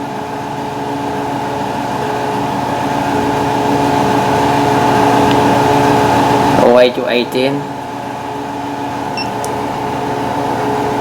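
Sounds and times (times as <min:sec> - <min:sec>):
machine motor humming: 0:08.8 - 0:11.0.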